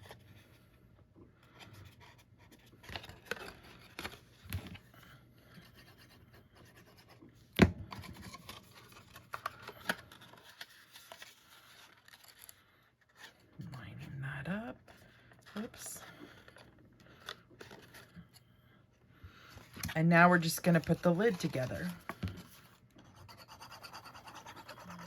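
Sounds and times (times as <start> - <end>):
paper rubbing and scratching: 23.1 - 25.0.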